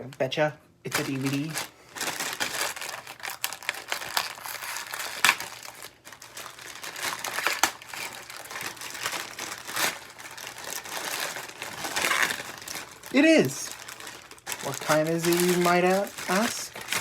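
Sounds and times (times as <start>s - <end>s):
packaging crinkling and rustling: 0.9s - 17.0s.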